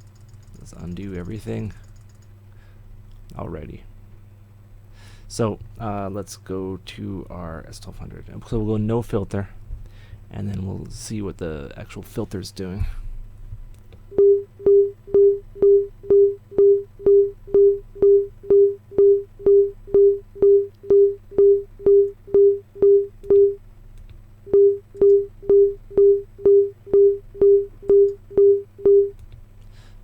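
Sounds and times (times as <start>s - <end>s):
short steady beeps: 14.1s - 23.6s, 24.5s - 29.2s.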